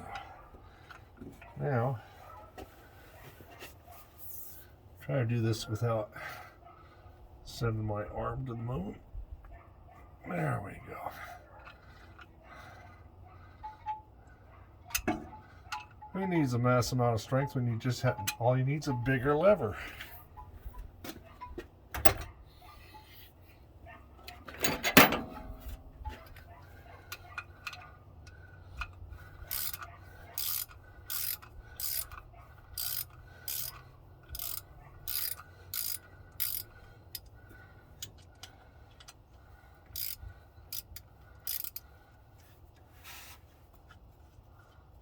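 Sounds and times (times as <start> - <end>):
ratchet wrench clicking: 28.8 - 37.3, 39.8 - 41.8.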